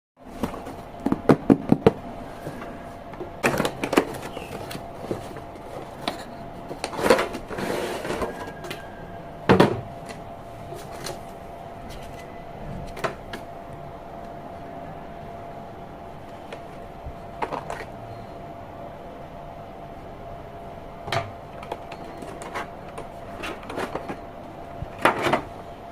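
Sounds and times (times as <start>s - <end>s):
faint steady hum: 0.2s - 25.9s.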